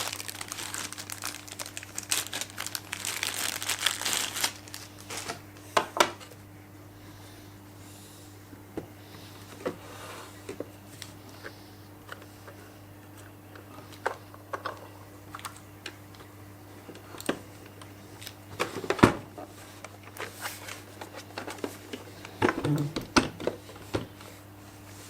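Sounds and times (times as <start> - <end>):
rustling cardboard and plastic packaging: 0.0 - 5.4, 17.0 - 22.8.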